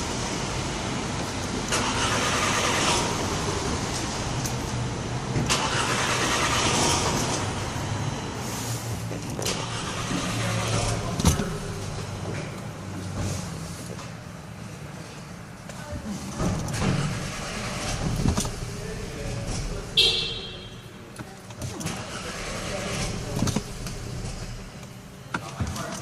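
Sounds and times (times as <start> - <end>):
car engine cranking: 1.3 - 8.2, 8.9 - 13.6, 16.3 - 26.0.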